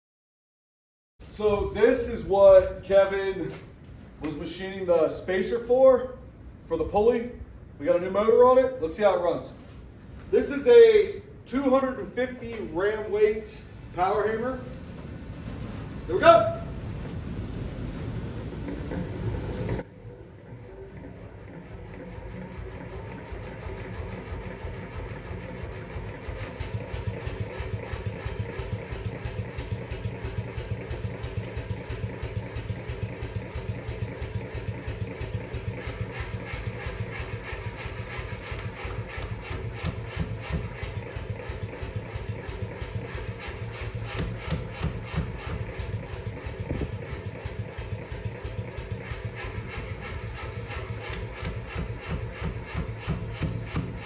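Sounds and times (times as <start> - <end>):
power hammer motor hum: 13.0 - 54.0
power hammer ram striking: 26.2 - 54.0.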